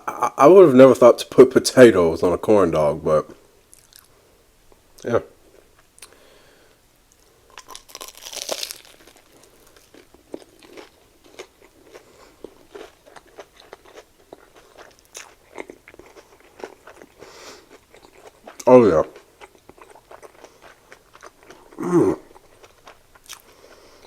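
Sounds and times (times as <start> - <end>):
chewing with crunches: 3.7 - 4.1, 7.5 - 24.0
crunchy bite: 7.5 - 18.7.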